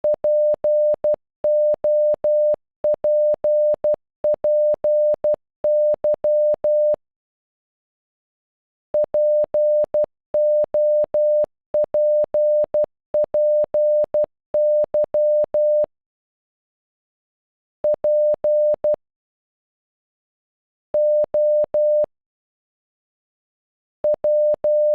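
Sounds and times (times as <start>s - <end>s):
morse code beeps: 0.0s - 7.0s, 9.0s - 15.9s, 17.8s - 19.0s, 21.0s - 22.1s, 24.0s - 24.9s.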